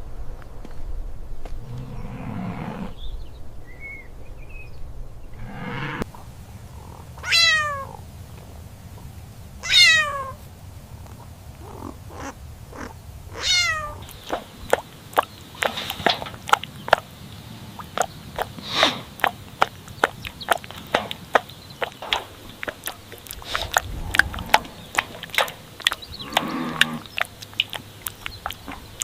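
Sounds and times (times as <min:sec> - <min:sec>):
cat meowing: 0:07.2 - 0:08.0, 0:09.6 - 0:10.4, 0:12.2 - 0:14.0.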